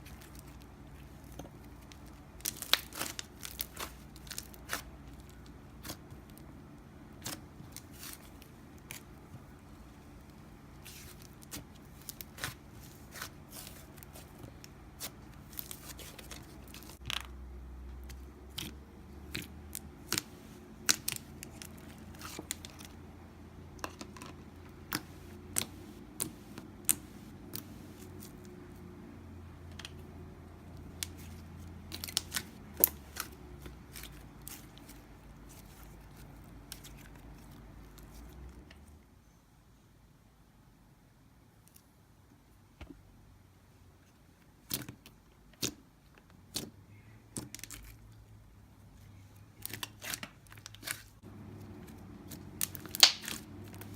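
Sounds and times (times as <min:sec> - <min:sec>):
slime clicking and popping: 0:52.5 - 0:53.4.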